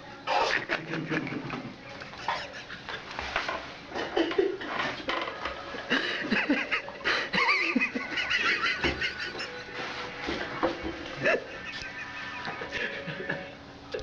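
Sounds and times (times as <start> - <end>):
people laughing: 0.3 - 3.2, 3.9 - 4.9, 5.8 - 10.4, 11.0 - 13.6.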